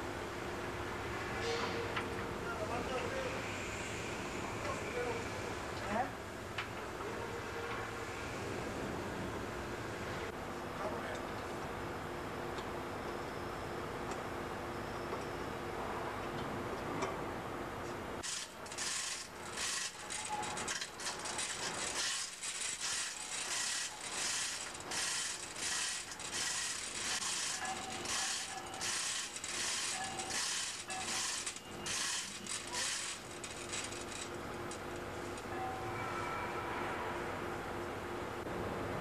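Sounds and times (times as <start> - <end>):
steady background hum: 0.0 - 39.0
ratchet clicking: 18.2 - 34.8.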